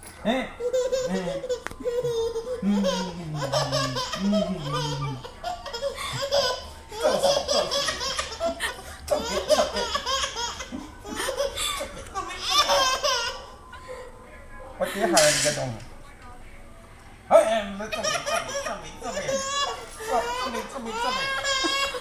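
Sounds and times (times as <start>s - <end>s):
child laughing: 0.6s - 13.6s, 17.9s - 22.0s.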